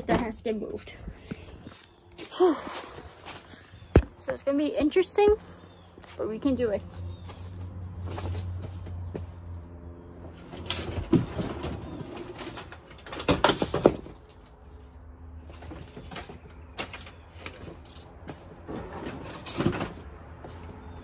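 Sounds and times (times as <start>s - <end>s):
stored items knocking and clattering: 10.3s - 14.4s, 15.5s - 20.7s.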